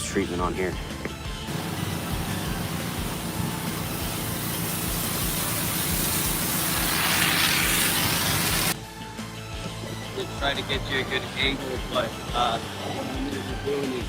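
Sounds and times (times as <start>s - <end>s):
pressure washer spraying concrete: 1.5s - 8.8s.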